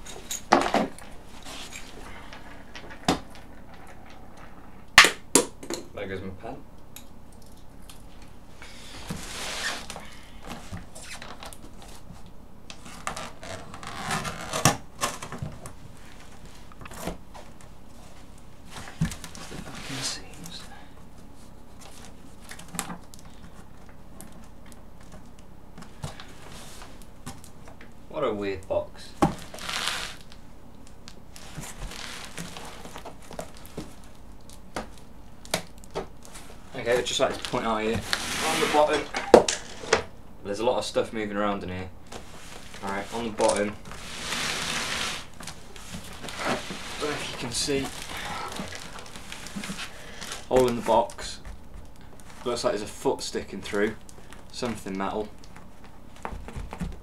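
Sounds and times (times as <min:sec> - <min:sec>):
cardboard box rubbing and scraping: 0:29.4 - 0:30.2, 0:37.9 - 0:39.0, 0:43.9 - 0:45.3.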